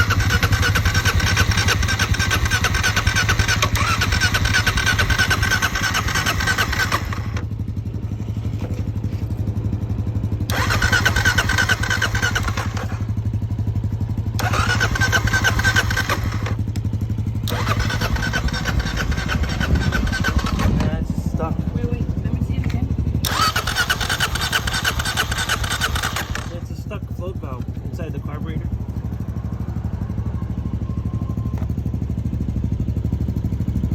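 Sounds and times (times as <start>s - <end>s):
motorcycle engine cranking: 0.0s - 27.0s.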